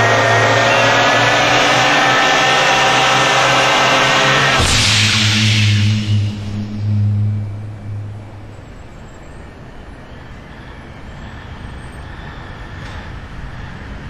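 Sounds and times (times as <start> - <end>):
vehicle running: 0.0 - 10.1.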